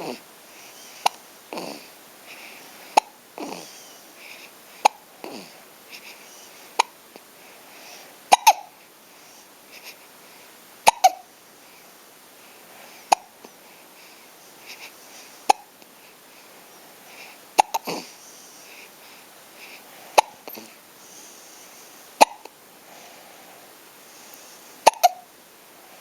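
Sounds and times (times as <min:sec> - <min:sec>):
person hiccuping: 0:08.3 - 0:08.7, 0:10.9 - 0:11.2, 0:22.2 - 0:22.5, 0:24.8 - 0:25.2.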